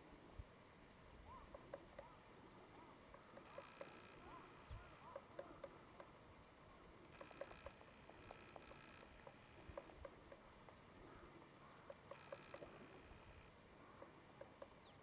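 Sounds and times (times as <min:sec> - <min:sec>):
woodpecker tapping on tree: 0:01.3 - 0:02.2, 0:02.8 - 0:06.2, 0:07.0 - 0:11.0, 0:11.7 - 0:15.0.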